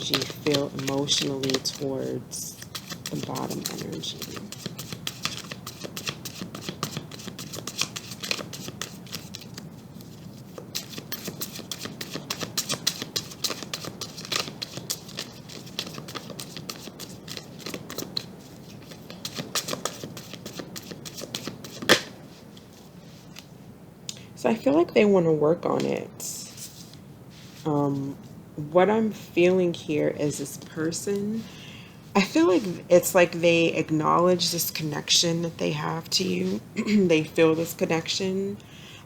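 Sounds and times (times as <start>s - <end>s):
cards being shuffled: 0.0s - 23.5s
sharp card snap: 21.8s - 22.2s.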